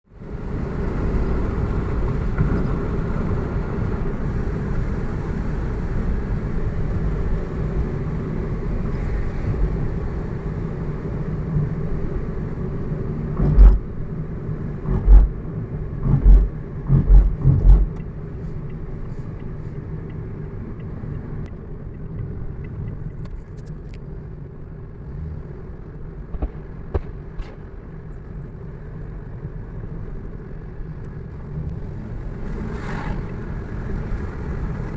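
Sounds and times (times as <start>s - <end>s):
car engine and road noise: 0.1s - 34.9s
heavy low thumps: 13.4s - 13.9s, 14.8s - 15.4s, 16.0s - 18.0s, 26.3s - 28.3s.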